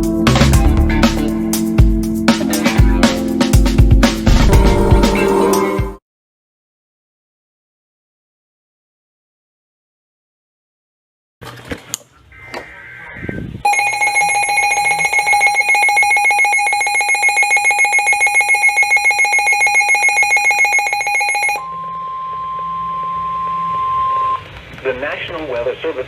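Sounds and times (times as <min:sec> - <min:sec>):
pulsing shrill electronic alarm: 0:13.7 - 0:24.4
steady warning alarm tone: 0:13.7 - 0:24.5.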